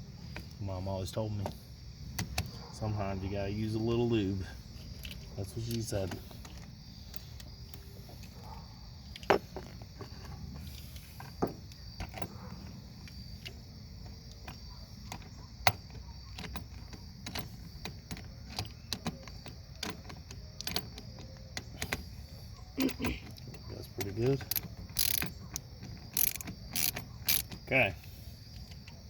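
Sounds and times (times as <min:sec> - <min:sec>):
crickets chirping: 0:00.0 - 0:29.0
wrench clicking on metal: 0:22.8 - 0:27.7.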